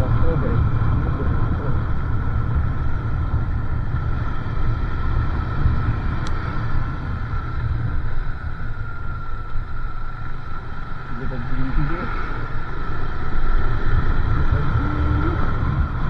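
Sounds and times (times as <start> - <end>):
high tick: 6.2 - 6.4.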